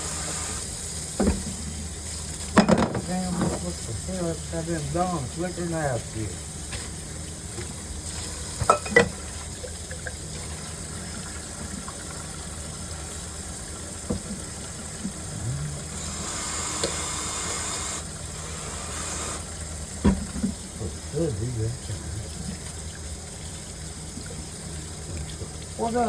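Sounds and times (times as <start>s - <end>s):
hiss: 0.0s - 2.4s, 15.4s - 19.5s
low background hum: 0.0s - 26.0s.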